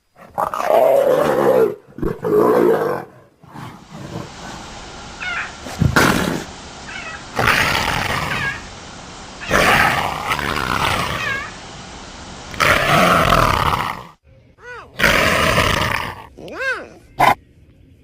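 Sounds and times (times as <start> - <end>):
quieter rasping growl: 3.4 - 14.2
big cat roaring growls: 7.3 - 8.6, 9.4 - 11.5, 12.5 - 14.2, 15.0 - 16.3.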